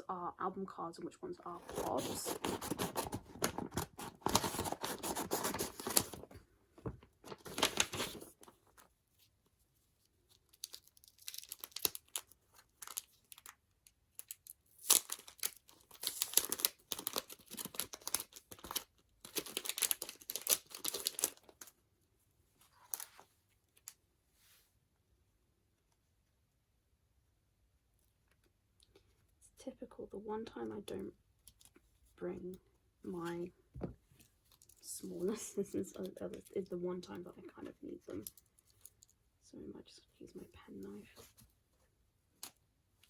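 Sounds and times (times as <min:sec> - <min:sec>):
packaging torn and crinkled: 0:10.4 - 0:21.7.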